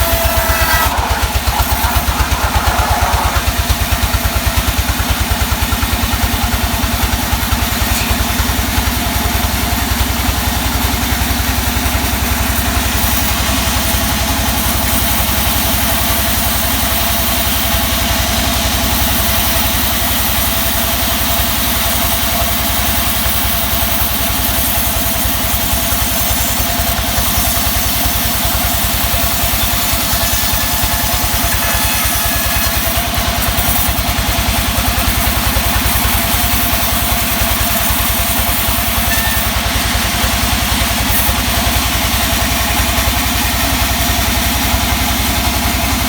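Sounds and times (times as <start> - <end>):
engine throbbing: 0.0 - 8.9.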